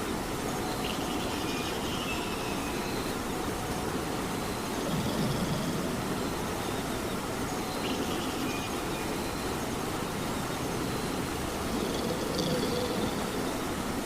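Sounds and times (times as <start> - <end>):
steady rain: 0.0 - 14.0
cats snoring softly: 4.7 - 6.2, 11.6 - 13.5.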